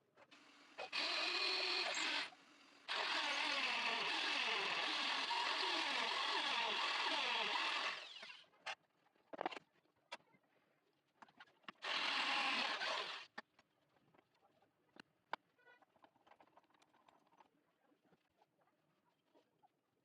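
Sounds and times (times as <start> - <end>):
electric power tool running: 0.4 - 8.4, 11.8 - 13.3.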